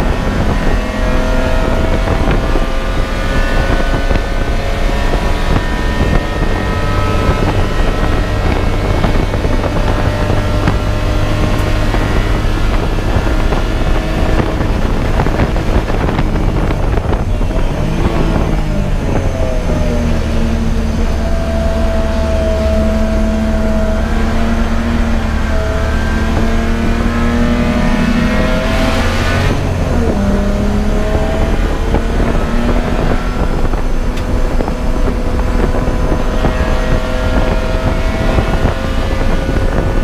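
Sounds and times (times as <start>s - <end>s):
race car engine revving: 0.0s - 40.0s
steady rush of noise: 0.0s - 40.0s.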